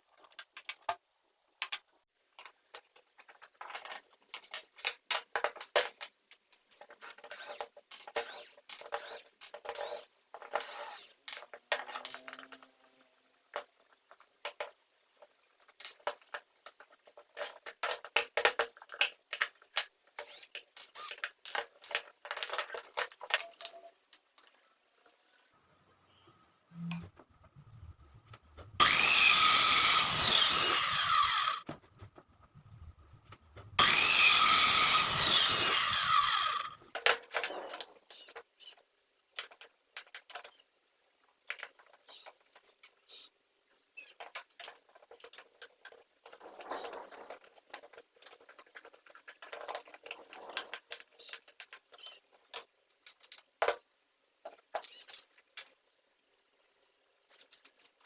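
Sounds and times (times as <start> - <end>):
clicks and knocks of parts handled: 0.0 - 1.0, 1.6 - 10.7, 39.4 - 40.6
electric power tool running: 28.8 - 31.6, 33.8 - 36.8.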